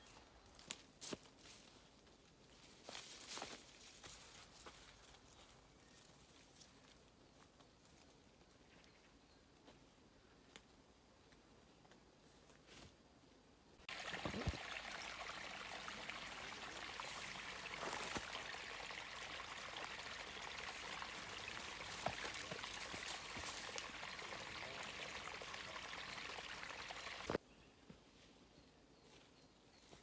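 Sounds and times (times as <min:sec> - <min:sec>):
stream water rushing: 0:13.9 - 0:27.4.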